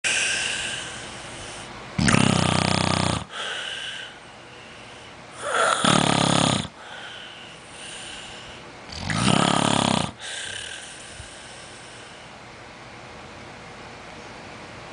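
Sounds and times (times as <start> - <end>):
quiet breathing: 0.0 - 1.8, 3.2 - 5.8, 6.7 - 8.7, 10.1 - 12.4
loud snores: 2.0 - 4.1, 5.4 - 7.2, 7.8 - 11.1.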